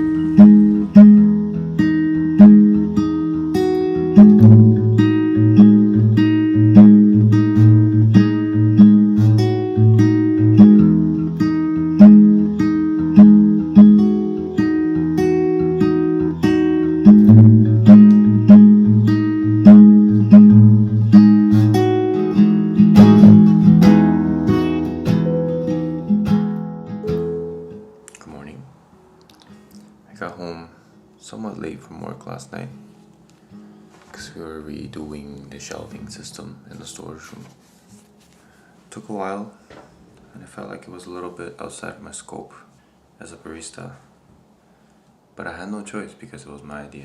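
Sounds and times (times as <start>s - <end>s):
acoustic guitar chords: 0.0s - 30.6s
low bass line: 17.0s - 28.0s.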